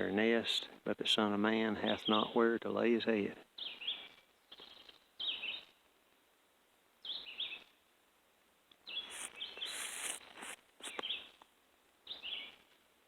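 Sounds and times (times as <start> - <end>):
songbird calling: 1.8 - 2.4, 3.6 - 5.8, 7.0 - 7.8, 8.8 - 11.4, 12.0 - 12.6
rustling hiss: 8.8 - 12.8.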